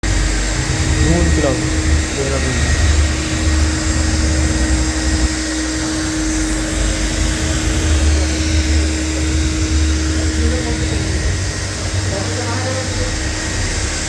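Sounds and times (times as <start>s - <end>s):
vacuum cleaner running: 0.0s - 14.0s.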